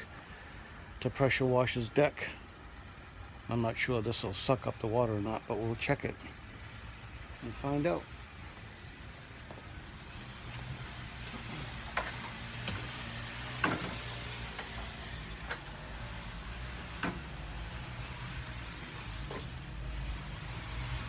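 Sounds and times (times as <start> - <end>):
pressure washer humming: 5.8 - 21.0.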